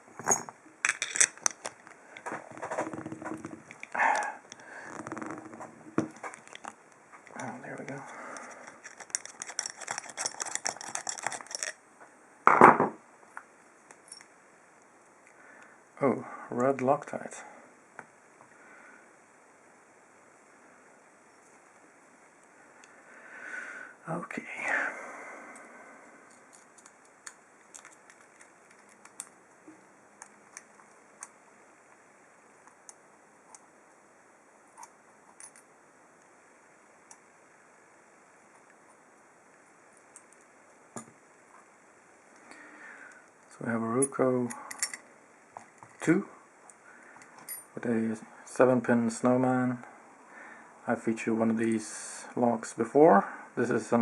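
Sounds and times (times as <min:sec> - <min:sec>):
screwdriver clicking on padlock parts: 0:08.4 - 0:11.8.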